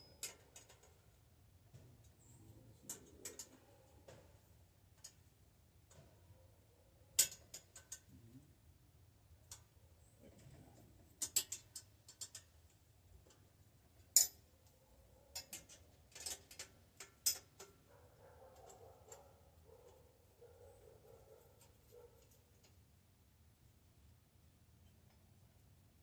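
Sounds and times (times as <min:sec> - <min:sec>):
metallic clicks and knocks of tools: 0:00.0 - 0:01.1, 0:02.8 - 0:06.2, 0:07.2 - 0:08.1, 0:09.4 - 0:09.7, 0:11.0 - 0:14.5, 0:15.3 - 0:17.9.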